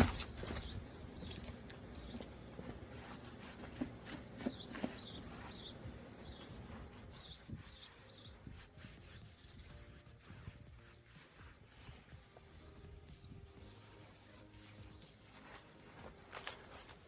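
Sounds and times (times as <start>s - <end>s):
small bird chirps: 0.2s - 9.6s, 11.8s - 13.4s.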